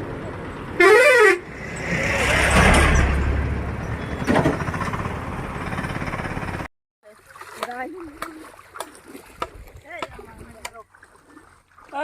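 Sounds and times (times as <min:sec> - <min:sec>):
vehicle engine passing: 0:00.0 - 0:06.7
vehicle horn: 0:00.8 - 0:01.6.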